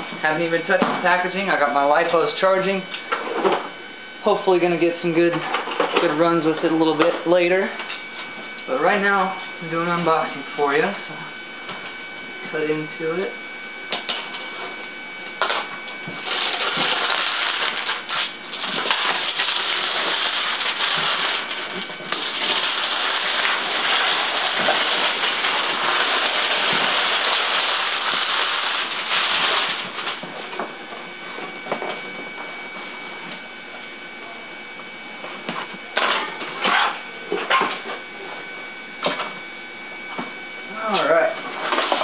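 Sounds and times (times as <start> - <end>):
cardboard ripping and scraping: 16.2 - 30.2.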